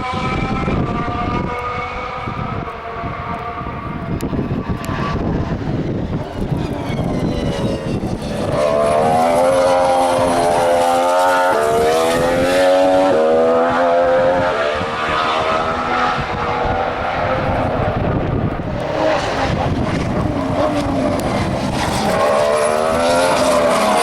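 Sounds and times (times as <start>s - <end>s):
racing car engine accelerating: 0.0s - 24.0s.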